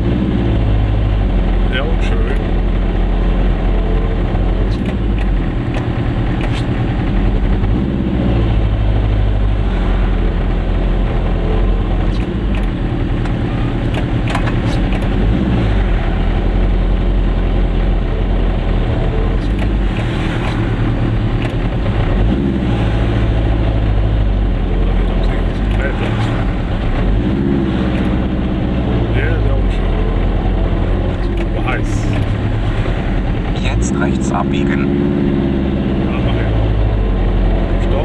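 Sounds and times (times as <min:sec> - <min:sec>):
sharp clicks and rattles: 0:04.3 - 0:07.8, 0:11.9 - 0:17.9, 0:18.6 - 0:28.6.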